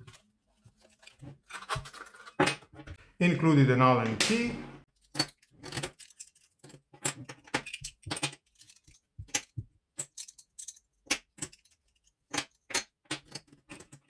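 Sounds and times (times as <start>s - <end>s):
small metal items clicking and rattling: 5.0s - 14.0s.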